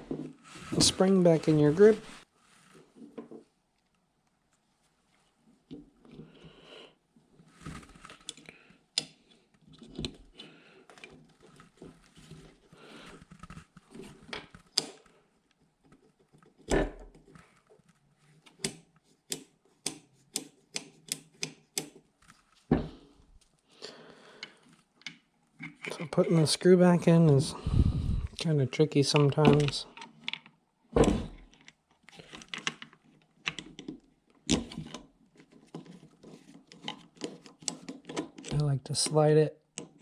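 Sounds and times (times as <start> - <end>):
small gun parts clicking and knocking: 13.3 - 22.4, 24.4 - 26.2, 29.0 - 30.6, 31.2 - 38.7, 39.7 - 40.0.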